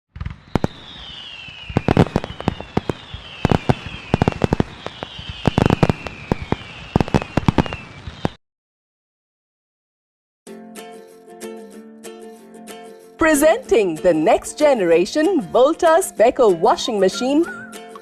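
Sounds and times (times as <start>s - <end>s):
sharp bangs and cracks: 0.1s - 8.4s
high falling whistles: 0.4s - 8.4s.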